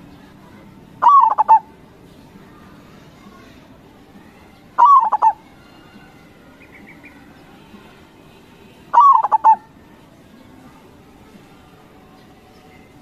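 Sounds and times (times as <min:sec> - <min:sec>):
dove cooing: 0:01.0 - 0:01.7, 0:04.8 - 0:05.4, 0:08.9 - 0:09.7.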